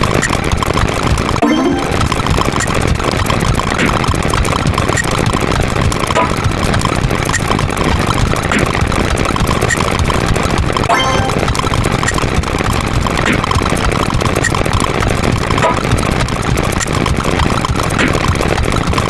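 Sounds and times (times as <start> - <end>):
rapid clicks: 0.0 - 19.0
steady rumble: 1.2 - 18.9
layered sound effects: 1.4 - 2.9, 6.1 - 7.6, 10.9 - 11.8, 15.6 - 16.0.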